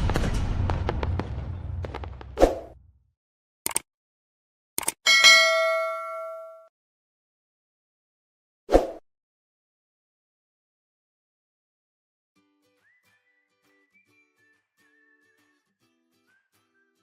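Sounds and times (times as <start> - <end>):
rumble: 0.0 - 3.0
short clicks: 3.7 - 3.9, 4.8 - 5.0
bell-like ding: 5.1 - 6.7.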